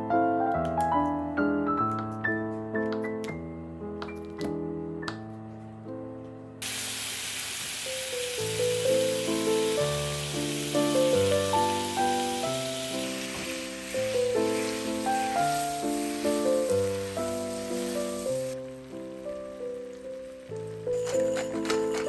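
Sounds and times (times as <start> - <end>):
slow piano music: 0.0 - 7.0, 7.7 - 22.0
steady rain hiss: 6.6 - 21.9.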